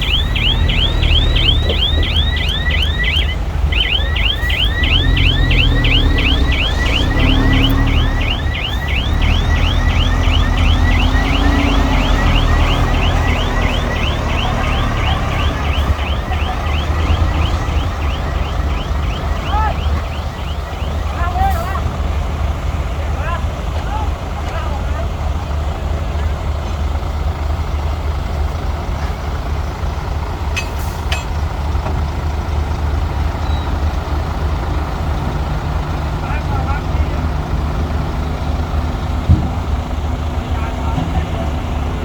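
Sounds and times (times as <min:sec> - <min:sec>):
warbling reversing alarm: 0:00.0 - 0:22.0
diesel engines rumbling: 0:00.0 - 0:42.0.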